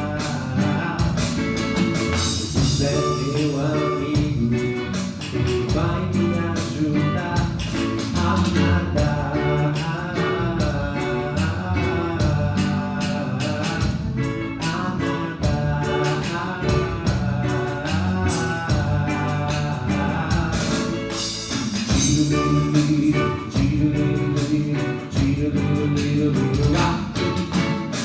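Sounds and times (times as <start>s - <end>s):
drum beat: 0.0s - 8.4s, 15.4s - 24.4s
gospel band music: 0.0s - 28.0s
singing: 0.0s - 28.0s.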